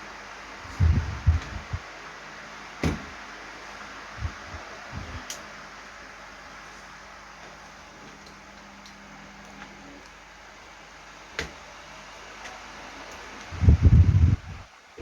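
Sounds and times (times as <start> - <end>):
low thumps: 0.8 - 1.8.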